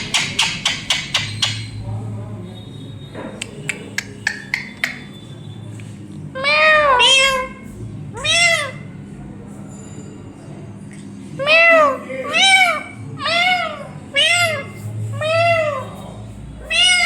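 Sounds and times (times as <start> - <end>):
sharp taps: 3.4 - 5.1
parrot meowing like a cat: 6.4 - 8.9, 11.4 - 15.8, 16.7 - 17.0.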